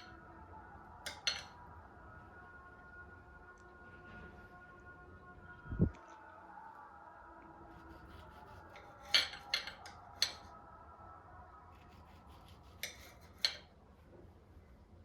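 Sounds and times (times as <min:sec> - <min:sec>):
faint room hum: 0:00.0 - 0:15.0
kitchenware clinking: 0:01.1 - 0:01.6, 0:09.0 - 0:10.5.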